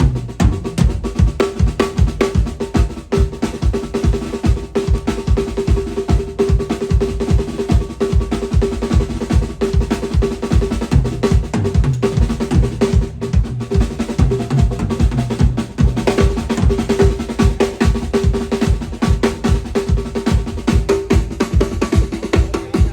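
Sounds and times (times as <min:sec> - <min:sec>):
drum ringing tone: 0:00.0 - 0:22.9
kick drum strokes: 0:00.0 - 0:22.9.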